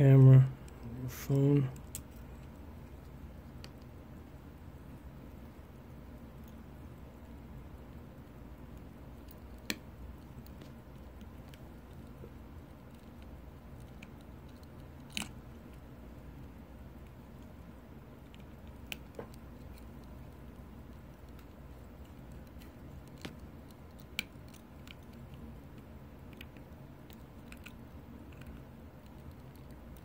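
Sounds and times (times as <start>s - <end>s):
low steady hum: 0.0s - 30.0s
small sharp clicks and taps: 1.8s - 3.9s, 8.7s - 15.8s, 18.2s - 30.0s.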